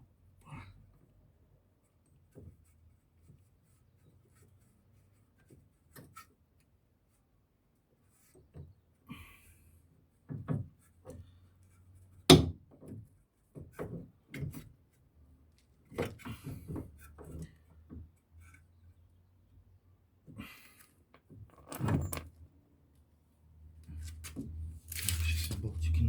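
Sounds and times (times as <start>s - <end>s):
tools and metal parts clunking: 21.5s - 22.4s.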